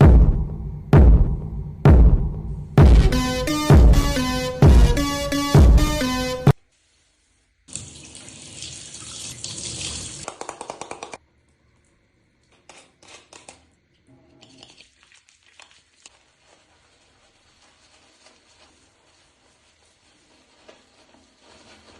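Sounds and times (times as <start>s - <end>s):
water running from tap: 7.7s - 10.3s
squeaks of rubbing wet hair: 14.4s - 21.9s.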